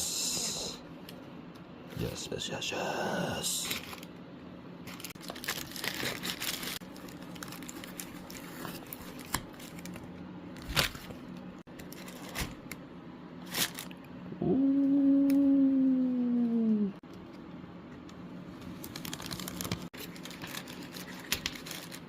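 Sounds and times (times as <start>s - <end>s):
steady low hum: 0.0s - 22.0s
paper and plastic crinkling: 3.6s - 4.2s, 4.8s - 12.8s, 13.4s - 14.0s, 18.6s - 22.0s.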